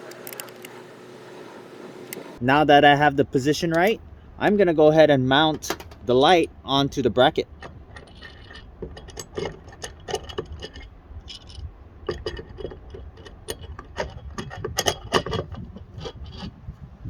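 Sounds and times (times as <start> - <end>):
metal parts clinking and scraping: 5.4 - 16.5.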